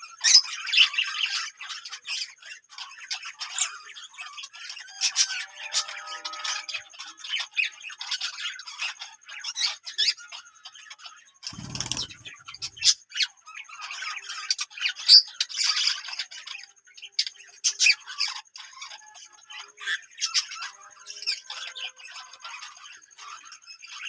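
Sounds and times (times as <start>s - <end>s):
parrots chirping and squawking: 2.8s - 10.4s, 11.5s - 16.3s.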